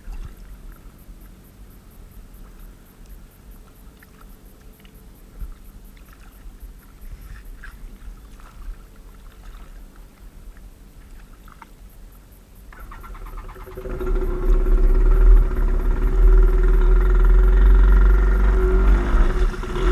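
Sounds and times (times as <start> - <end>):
paddle splashes: 0.0 - 1.4, 2.4 - 13.8.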